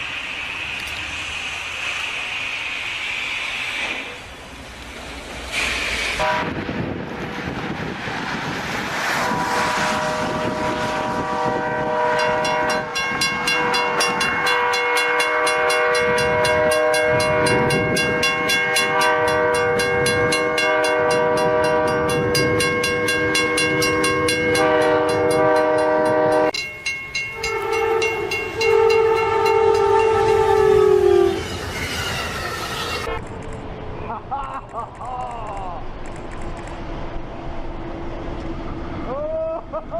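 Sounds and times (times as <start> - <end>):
train horn chord: 6.2 - 6.6, 9.2 - 26.6, 27.4 - 31.6
rushing background noise: 31.4 - 39.9.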